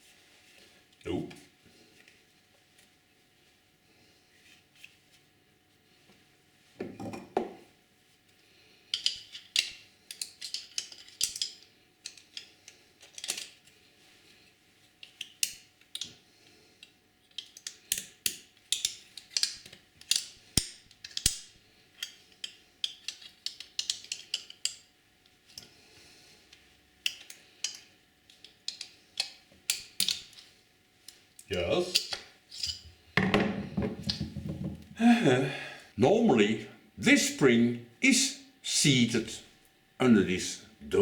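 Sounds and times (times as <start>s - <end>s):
small metal parts clicking and scraping: 8.9s - 13.7s, 17.2s - 20.4s, 21.0s - 21.4s, 22.0s - 24.9s, 27.0s - 30.5s, 31.8s - 32.8s.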